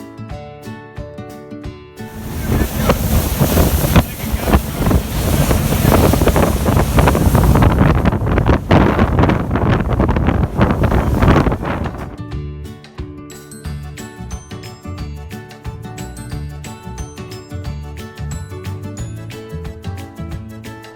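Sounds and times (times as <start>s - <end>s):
water rushing past boat: 2.1s - 12.2s
wind buffeting microphone: 2.1s - 12.2s.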